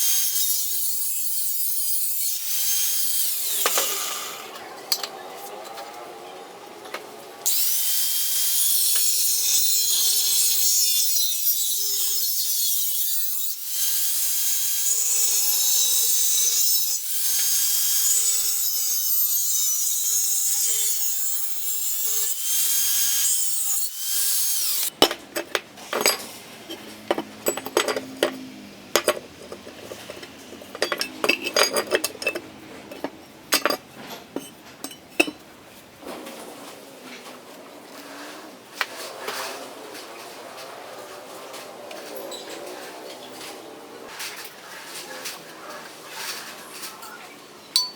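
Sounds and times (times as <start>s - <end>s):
angle grinder cutting steel: 0.0s - 4.6s, 7.5s - 35.4s
clicks and knocks of metal handling: 24.9s - 35.5s.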